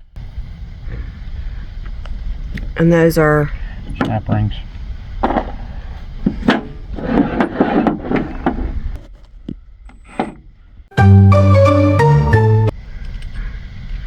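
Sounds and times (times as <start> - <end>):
loud music with held notes: 11.0 - 12.7.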